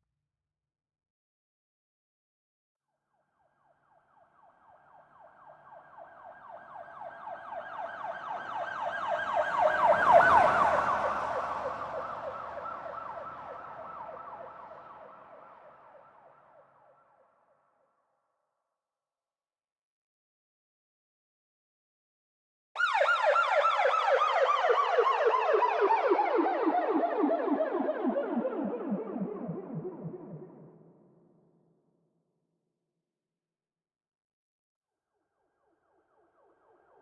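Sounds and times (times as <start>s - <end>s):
police siren yelping: 6.5s - 15.4s, 22.8s - 30.6s.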